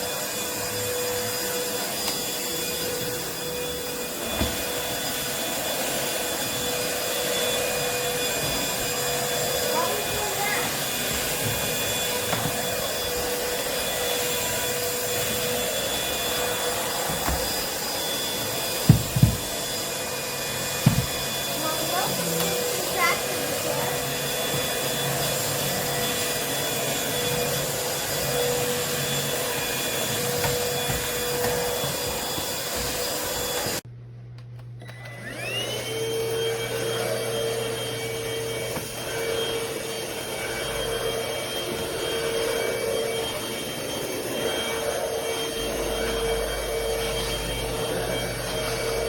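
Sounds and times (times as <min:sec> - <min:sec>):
vacuum cleaner motor whine: 0:00.0 - 0:49.0.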